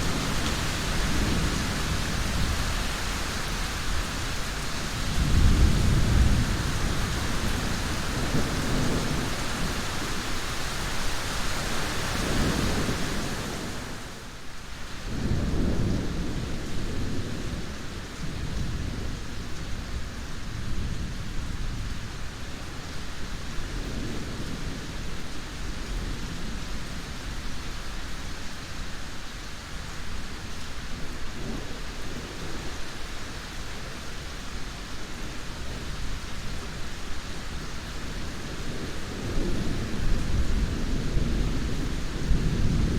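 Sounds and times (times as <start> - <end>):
rolling thunder rumbles: 0.0 - 10.3, 37.5 - 42.9
steady rain hiss: 0.0 - 42.9.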